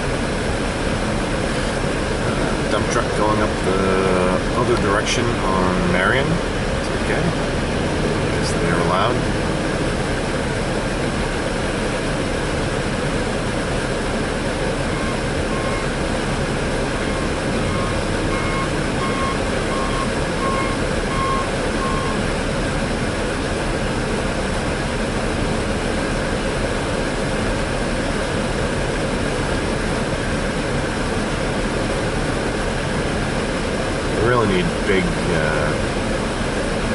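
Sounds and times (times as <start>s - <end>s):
heavy machinery running: 0.0s - 36.9s
backup alarm beeping: 14.9s - 16.0s, 16.8s - 22.3s.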